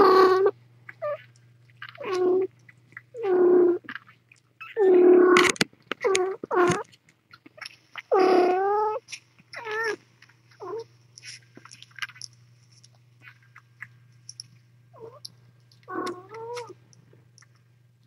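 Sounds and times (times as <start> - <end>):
kittens mewing: 0.0 - 2.5, 3.1 - 4.0, 4.6 - 6.9, 8.0 - 10.0, 10.6 - 11.4, 15.0 - 16.8
low steady hum: 0.0 - 18.0.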